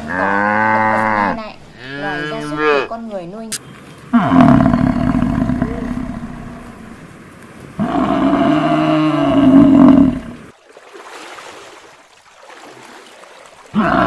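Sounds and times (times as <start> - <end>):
cow mooing: 0.0 - 3.0, 4.1 - 7.1, 7.8 - 10.5, 13.8 - 14.0.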